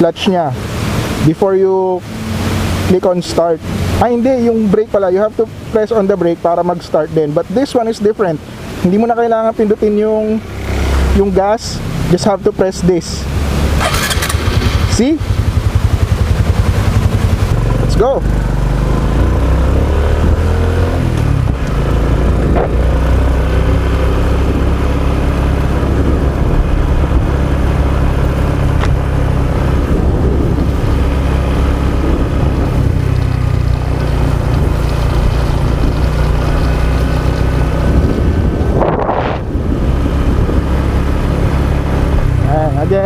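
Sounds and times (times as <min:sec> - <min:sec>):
motorcycle engine running: 0:12.6 - 0:43.0.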